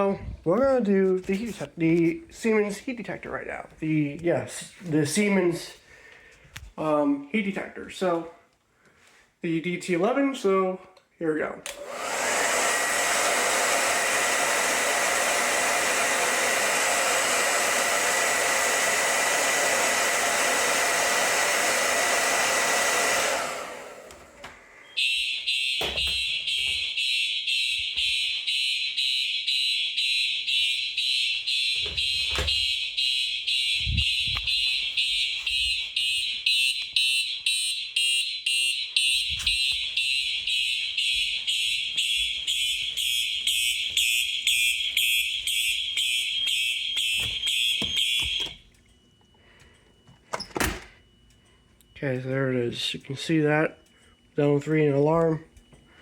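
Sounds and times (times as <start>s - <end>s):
hot-air blower running: 11.7s - 24.9s
fire alarm horns pulsing: 24.8s - 56.0s.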